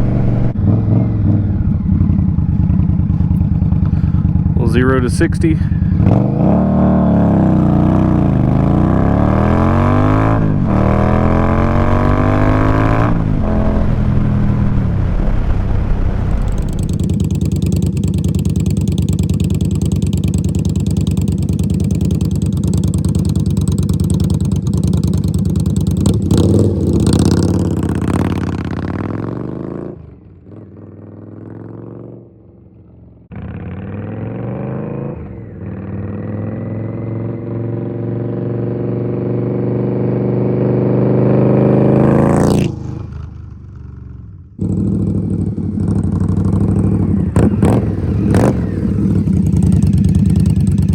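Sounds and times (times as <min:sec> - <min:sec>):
motorcycle engine accelerating: 0:00.0 - 0:50.9
wind rush: 0:10.3 - 0:17.5.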